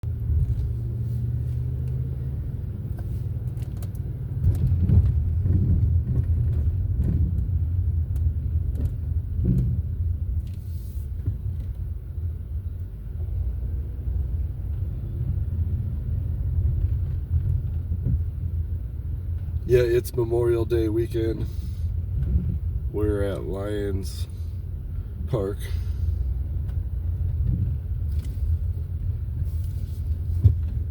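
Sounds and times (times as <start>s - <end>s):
car driving rumble inside cabin: 0.0s - 30.9s
light clicks and knocks: 2.9s - 10.6s.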